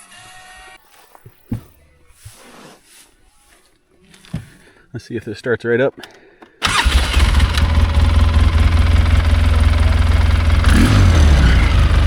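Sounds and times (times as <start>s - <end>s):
atv engine idling: 6.6s - 12.0s.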